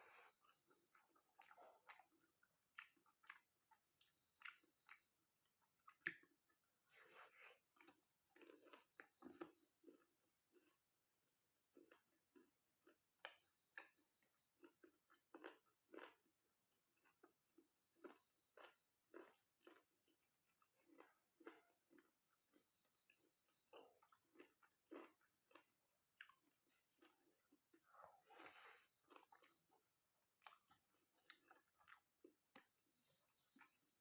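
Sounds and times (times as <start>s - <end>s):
person chewing food: 0.0s - 34.0s.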